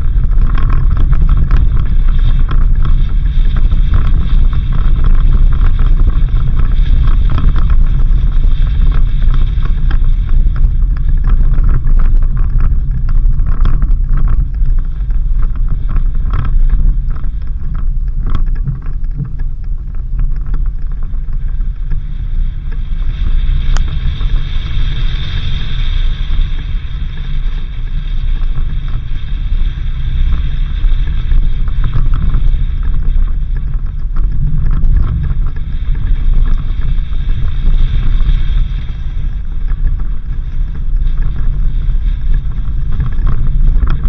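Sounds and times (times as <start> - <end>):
small knocks and rattles: 0.0 - 25.4
vehicle engine and tyres rumbling: 0.0 - 44.0.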